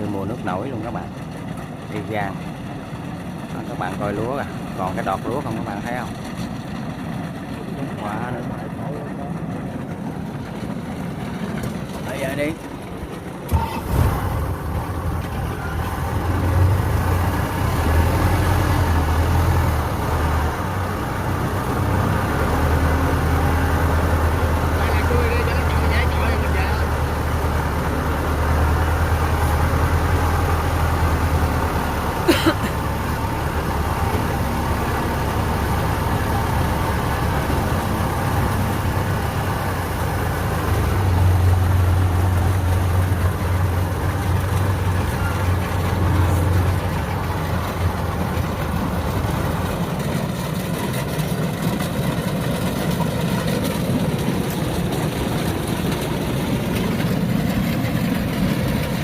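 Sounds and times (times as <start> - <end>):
combine harvester engine and machinery: 0.0 - 59.0.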